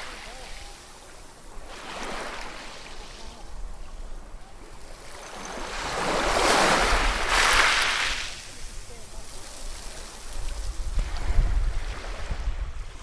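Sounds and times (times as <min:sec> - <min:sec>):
ocean waves breaking on shore: 0:00.0 - 0:13.0.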